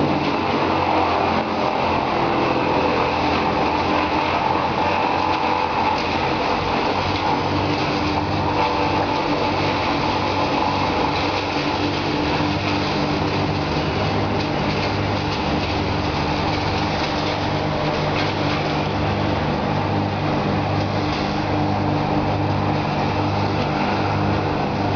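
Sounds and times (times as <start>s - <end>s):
engine running with pulsing throb: 0.0s - 24.9s.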